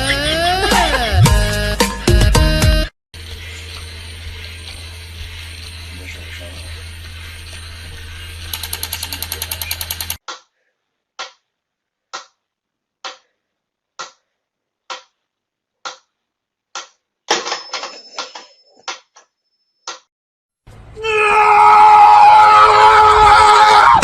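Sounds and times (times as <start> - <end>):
sharp clock-like ticks: 8.4 - 10.2.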